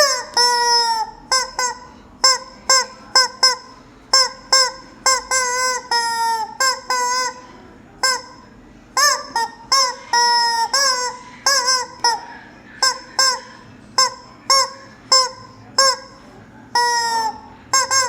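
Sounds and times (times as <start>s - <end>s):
rubber chicken toy squawking: 0.0s - 18.0s.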